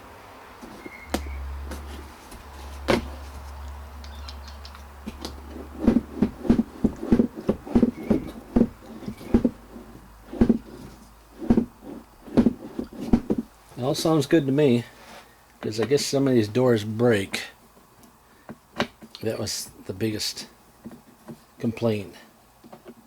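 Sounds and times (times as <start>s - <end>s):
low hum: 0.8s - 13.5s
hollow plastic knocks: 2.9s - 3.2s, 5.0s - 13.5s.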